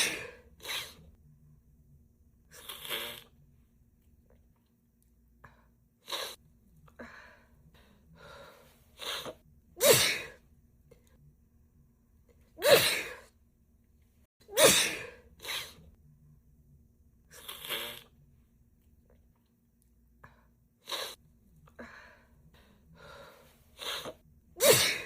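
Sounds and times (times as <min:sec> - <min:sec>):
breaths: 0:06.9 - 0:09.4, 0:21.7 - 0:24.2
woman sneezing: 0:12.6 - 0:13.2, 0:14.5 - 0:15.8, 0:23.8 - 0:25.0.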